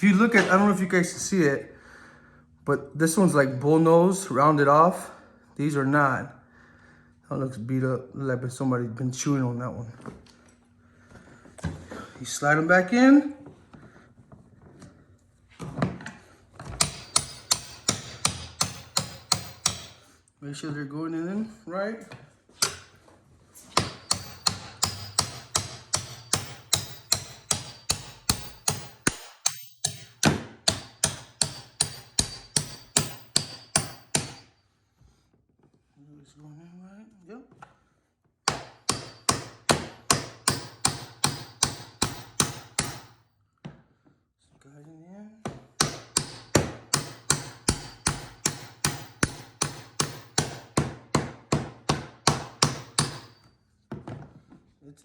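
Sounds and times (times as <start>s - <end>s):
hammer tapping metal pins: 16.8s - 20.0s, 22.6s - 23.0s, 23.7s - 34.5s, 38.5s - 43.2s, 45.5s - 53.5s.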